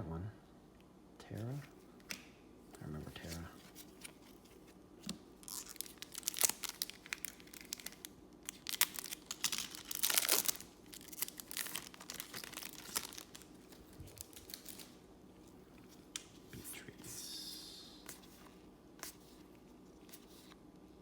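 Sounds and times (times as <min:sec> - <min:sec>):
foil wrapper crinkling: 0:05.4 - 0:15.0.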